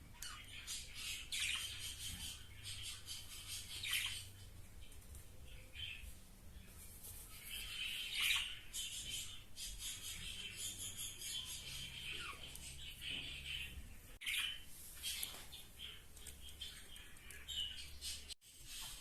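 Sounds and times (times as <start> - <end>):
budgerigars warbling and chattering: 0.1 - 4.9, 7.4 - 18.8.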